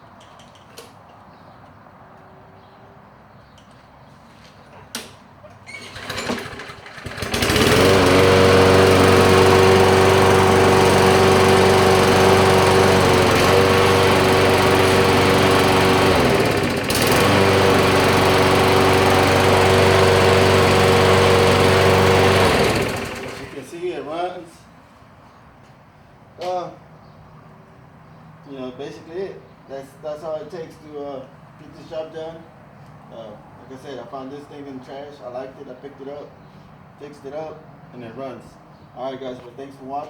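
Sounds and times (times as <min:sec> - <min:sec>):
lawnmower engine running: 0:05.7 - 0:23.8.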